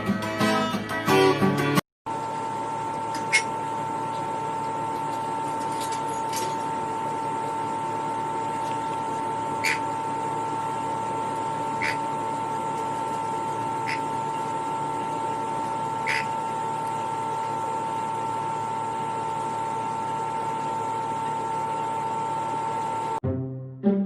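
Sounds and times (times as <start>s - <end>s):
pet bird chirping: 9.6s - 9.9s, 11.8s - 12.0s, 13.8s - 14.1s, 16.0s - 16.3s.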